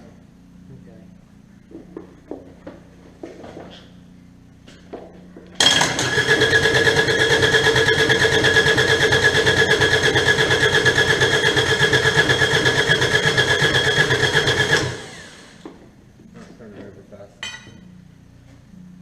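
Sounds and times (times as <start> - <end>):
diesel engine cranking: 5.6 - 15.6.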